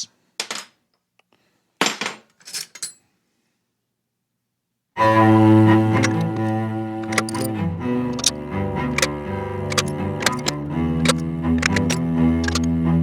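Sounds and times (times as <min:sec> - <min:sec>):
bowed string background music: 0:05.0 - 0:13.0
metal drill bits clinking: 0:06.0 - 0:07.5, 0:08.1 - 0:08.3, 0:08.9 - 0:09.1, 0:09.7 - 0:12.7.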